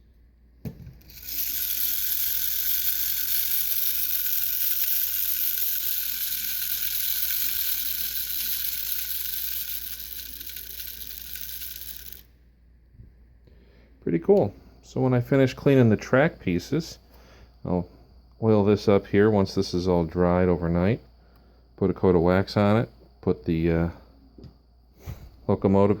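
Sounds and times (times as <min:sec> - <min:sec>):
high-pitched whir of toy gears: 0:01.0 - 0:12.3.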